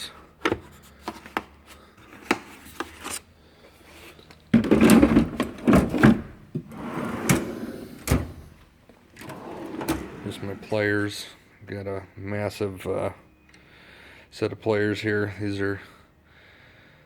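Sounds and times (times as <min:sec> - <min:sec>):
tool box drawer sliding: 0:04.6 - 0:08.6, 0:09.2 - 0:11.0.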